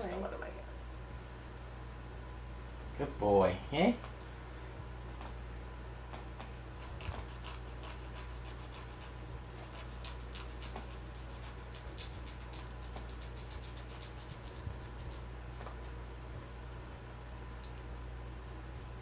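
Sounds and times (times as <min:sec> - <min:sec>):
low steady hum: 0:00.0 - 0:19.0
nail file rasping on claws: 0:06.4 - 0:15.3.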